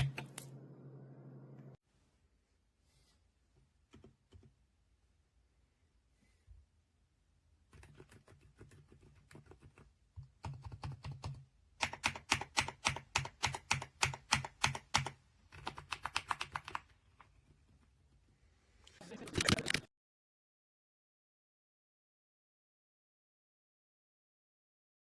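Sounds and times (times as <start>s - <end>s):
mechanical keyboard typing: 7.7s - 16.9s.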